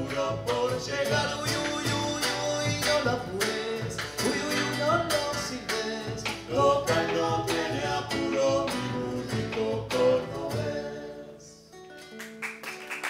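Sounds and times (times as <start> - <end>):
acoustic guitars strumming: 0.0 - 13.0.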